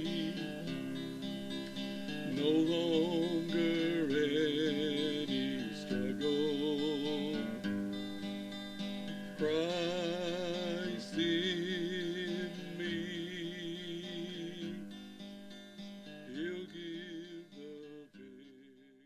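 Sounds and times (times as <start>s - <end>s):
person singing with vibrato: 0.0s - 1.2s, 2.2s - 7.7s, 9.4s - 15.0s, 16.3s - 19.0s
acoustic guitar strumming: 0.0s - 19.0s.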